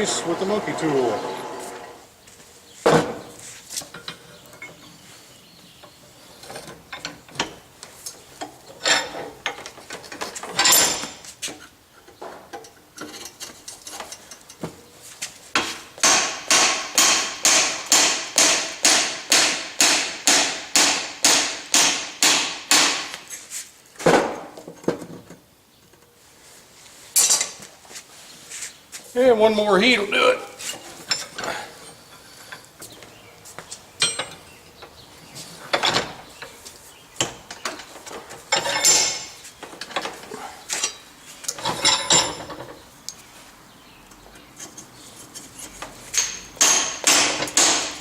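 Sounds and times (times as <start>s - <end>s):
hammer striking metal bar: 16.0s - 23.2s, 46.2s - 48.0s.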